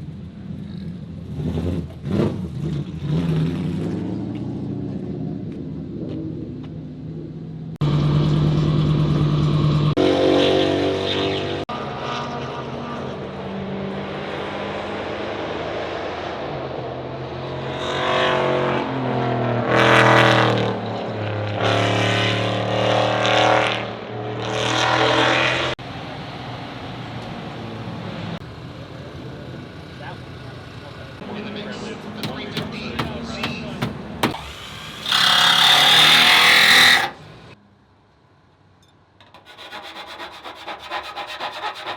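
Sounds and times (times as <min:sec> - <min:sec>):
engine revving hard: 0:33.7 - 0:37.2.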